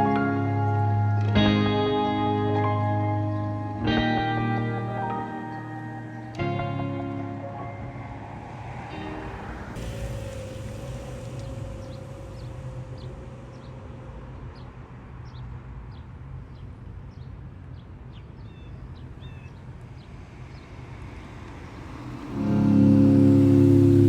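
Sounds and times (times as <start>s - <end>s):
steady low rumble: 3.7s - 18.4s, 19.0s - 24.0s
small birds chirping: 11.3s - 20.8s.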